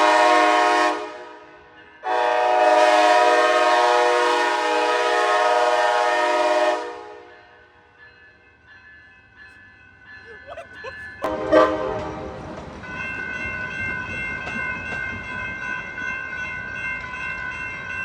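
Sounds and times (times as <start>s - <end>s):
train horn blowing: 0.0s - 7.5s, 11.3s - 12.4s.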